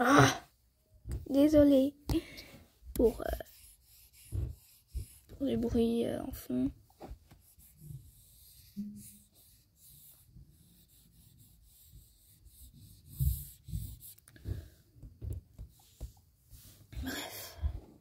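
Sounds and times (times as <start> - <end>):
rubbing: 3.0 - 6.0, 6.9 - 16.9.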